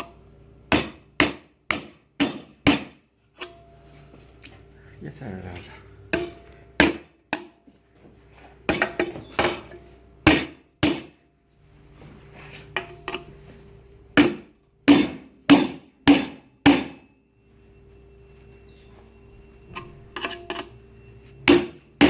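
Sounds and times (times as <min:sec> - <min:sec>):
hammer striking steel chisel: 0:00.7 - 0:03.6, 0:06.2 - 0:07.6, 0:08.7 - 0:11.2, 0:14.2 - 0:17.0, 0:21.4 - 0:22.0.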